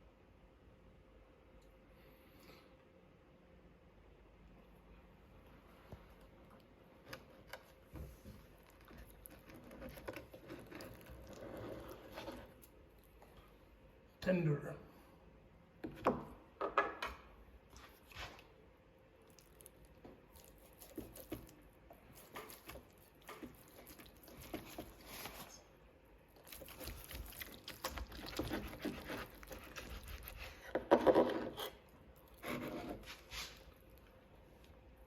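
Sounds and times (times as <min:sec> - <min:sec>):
wet squishy meat handling: 0:17.7 - 0:25.5, 0:26.1 - 0:30.6.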